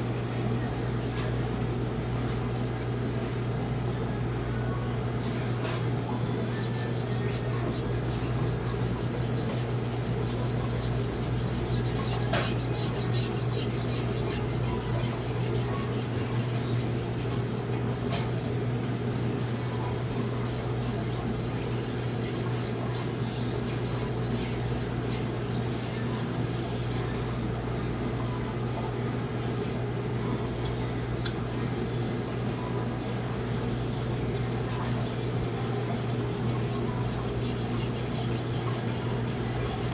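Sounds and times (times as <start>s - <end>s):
knife scraping on whetstone: 6.5s - 26.7s, 33.3s - 39.9s.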